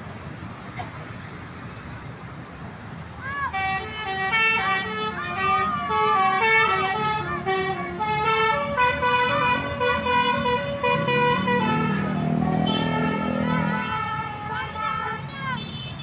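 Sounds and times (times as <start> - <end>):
bus musical horn tune: 3.5 - 16.0.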